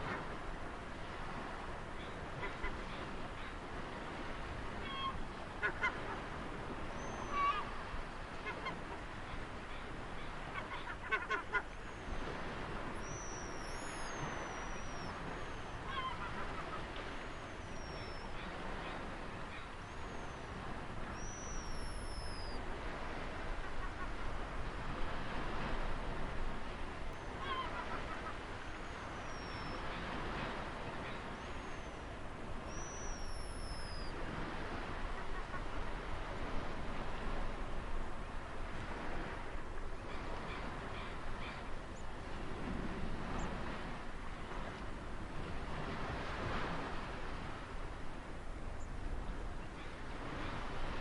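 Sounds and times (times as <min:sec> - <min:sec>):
ocean waves washing on shore: 0:00.0 - 0:51.0
high whistled bird calls: 0:13.0 - 0:15.8, 0:21.1 - 0:22.6, 0:28.9 - 0:29.8, 0:32.7 - 0:34.2.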